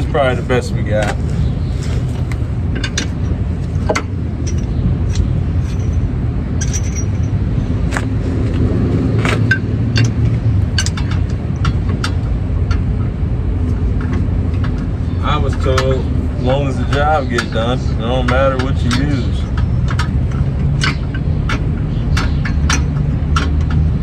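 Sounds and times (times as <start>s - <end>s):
steady low rumble: 0.0s - 24.0s
metal clicks and taps: 9.2s - 12.9s, 18.3s - 23.9s.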